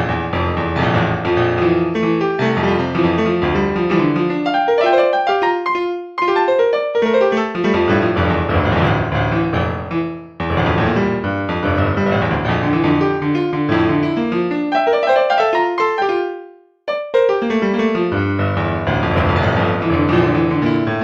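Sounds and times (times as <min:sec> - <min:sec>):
piano music: 0:00.0 - 0:21.0.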